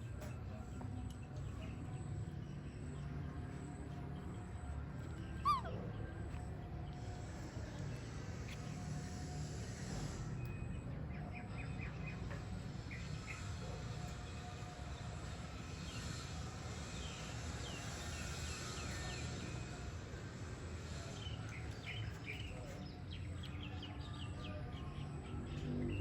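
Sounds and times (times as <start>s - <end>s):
faint high chirps: 3.5s - 6.6s.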